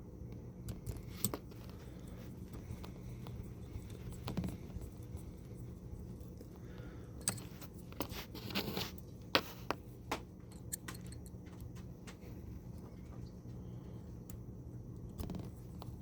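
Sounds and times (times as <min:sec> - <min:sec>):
steady low hum: 0:00.0 - 0:16.0
small metal clicks: 0:10.4 - 0:12.2.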